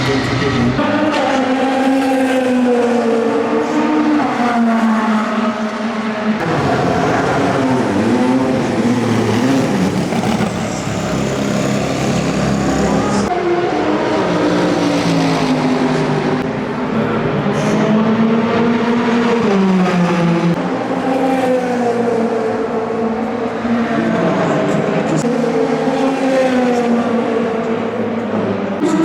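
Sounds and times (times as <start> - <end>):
race car engine passing: 0.0 - 28.8.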